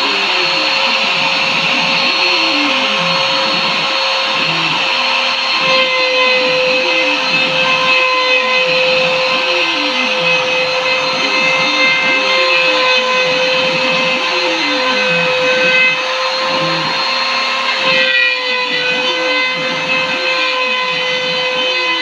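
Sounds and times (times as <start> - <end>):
motor tones stepping in pitch: 0.0 - 17.2
machine spindle whine: 0.0 - 22.0.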